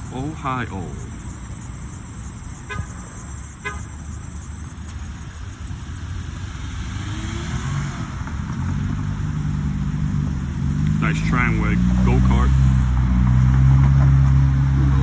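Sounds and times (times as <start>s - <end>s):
street traffic rumble: 0.0s - 15.0s
car horn toots: 2.6s - 4.1s.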